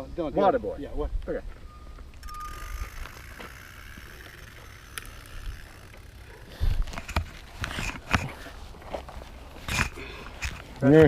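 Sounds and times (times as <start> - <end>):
bike tyres and frame rattling: 2.2 - 11.0.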